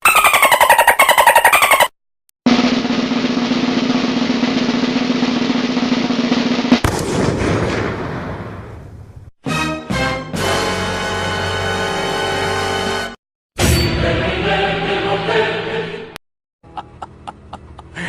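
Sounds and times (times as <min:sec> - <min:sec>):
snare drum roll: 0:02.5 - 0:08.0.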